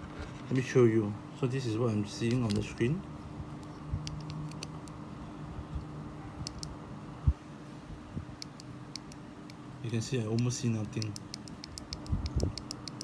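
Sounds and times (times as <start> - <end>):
steady low hum: 0.0 - 13.0
small device handling clicks: 2.2 - 2.8, 3.6 - 5.0, 6.4 - 6.7, 10.4 - 13.0.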